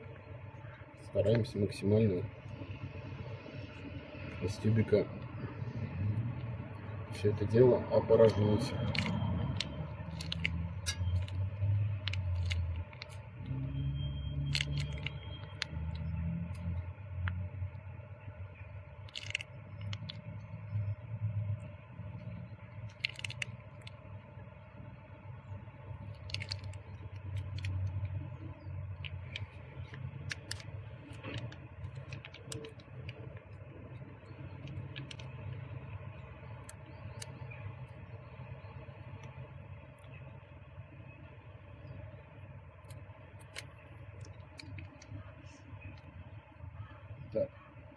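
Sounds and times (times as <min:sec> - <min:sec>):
steady low hum: 0:00.0 - 0:47.9
steady low rumble: 0:00.0 - 0:47.9
plastic tube squeezed and crinkled: 0:08.2 - 0:17.8, 0:18.5 - 0:21.0, 0:22.0 - 0:39.4.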